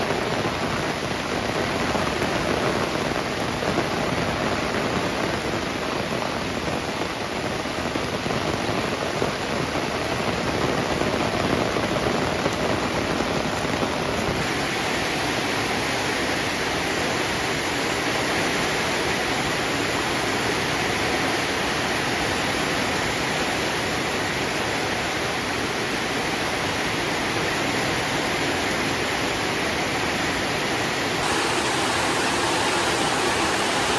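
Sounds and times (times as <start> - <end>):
heavy rain pouring: 0.0 - 21.9, 29.6 - 33.9.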